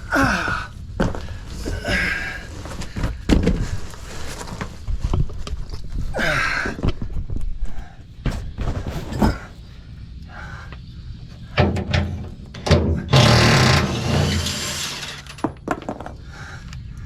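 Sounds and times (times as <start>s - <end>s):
metal parts and tools knocking: 11.6s - 16.1s
rough scraping noise: 12.8s - 15.5s.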